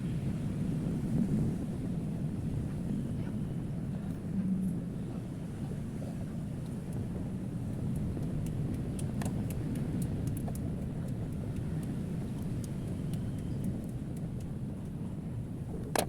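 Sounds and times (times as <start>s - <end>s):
low background rumble: 0.0s - 16.0s.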